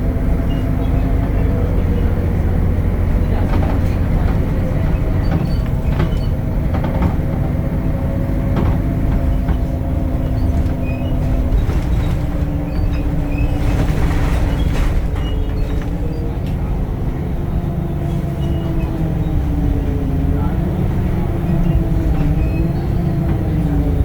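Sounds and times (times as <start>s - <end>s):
bus diesel engine rumbling: 0.0s - 24.0s
small rattles and knocks: 3.4s - 7.7s.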